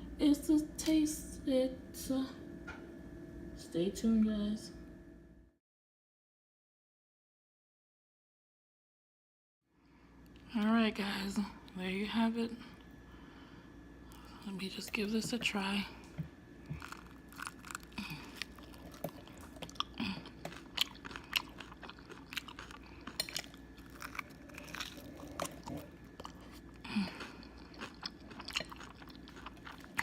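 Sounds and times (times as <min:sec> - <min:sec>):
crunchy chewing: 0:16.6 - 0:30.0.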